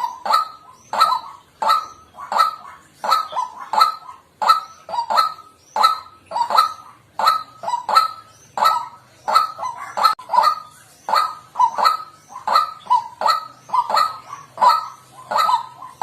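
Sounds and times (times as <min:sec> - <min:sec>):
bird harsh kwak calls: 0:00.0 - 0:16.0.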